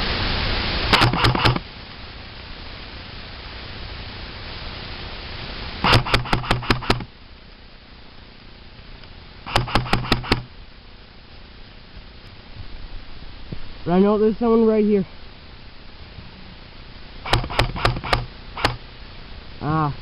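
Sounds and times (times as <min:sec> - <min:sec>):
steady hiss: 0:00.0 - 0:20.0
airsoft gun full-auto bursts: 0:00.9 - 0:01.6, 0:05.8 - 0:07.1, 0:09.5 - 0:10.5, 0:17.2 - 0:18.8
gearbox whirring: 0:00.9 - 0:01.6, 0:17.3 - 0:18.8.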